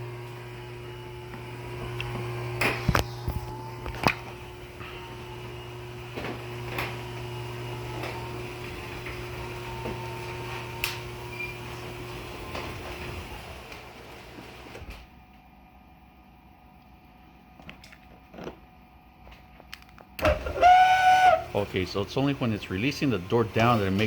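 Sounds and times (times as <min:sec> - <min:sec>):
garage door opener motor humming: 0:00.0 - 0:15.4, 0:20.2 - 0:24.0.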